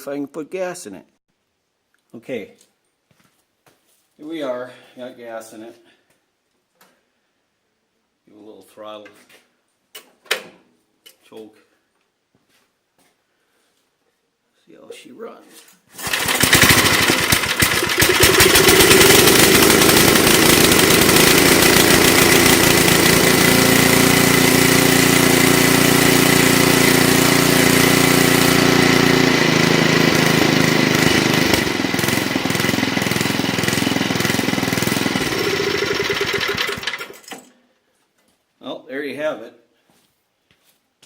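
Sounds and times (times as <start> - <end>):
snowblower engine running: 16.0 - 37.3.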